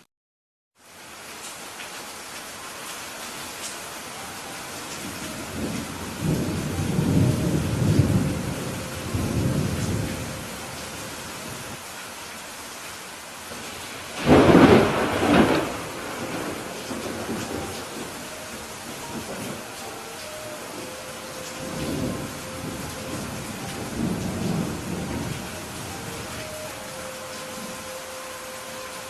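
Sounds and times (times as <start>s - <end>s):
steady rain: 0.8s - 29.0s
rolling thunder rumble: 5.0s - 11.8s, 14.1s - 26.8s
sharp thunderclap: 14.2s - 18.0s.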